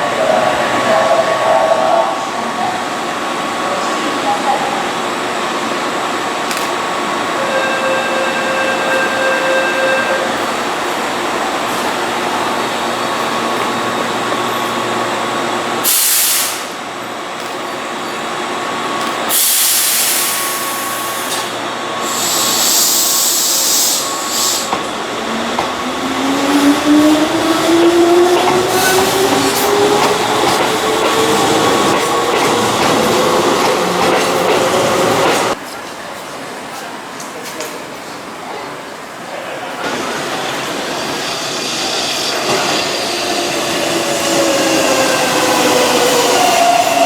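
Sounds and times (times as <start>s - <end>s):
electric train humming: 0.0s - 15.9s, 16.6s - 35.6s, 39.7s - 47.0s
air hiss bursts: 15.8s - 16.8s, 19.3s - 24.7s.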